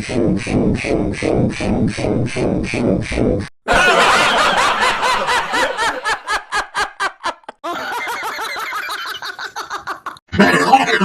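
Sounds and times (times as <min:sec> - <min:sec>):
cartoon character laughing: 0:03.7 - 0:11.0.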